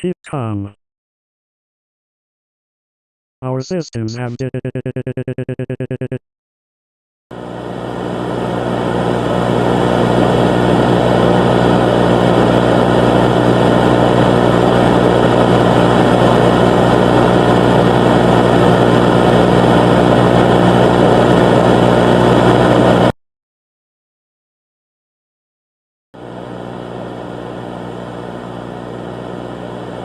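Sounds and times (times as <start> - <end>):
alert voice speaking: 0.0 - 0.8, 3.4 - 6.2
harsh roaring noise: 7.4 - 23.1.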